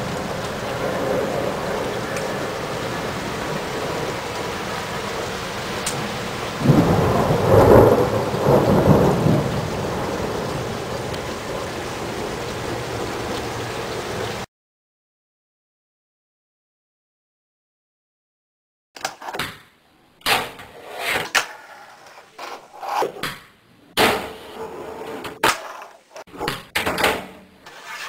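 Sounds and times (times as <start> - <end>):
rolling thunder rumble: 0.0 - 14.4
rain falling: 0.0 - 14.5.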